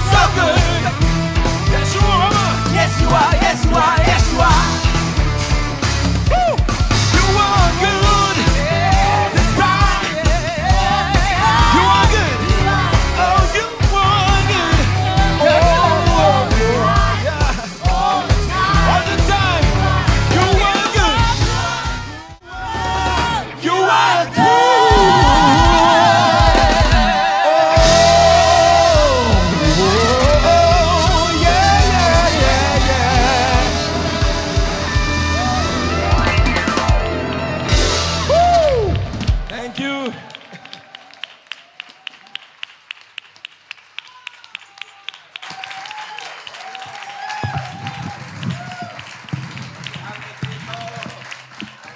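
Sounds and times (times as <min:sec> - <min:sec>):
person singing with vibrato: 0:00.0 - 0:05.2, 0:06.2 - 0:40.1
gospel band with bass and drums: 0:00.0 - 0:39.9.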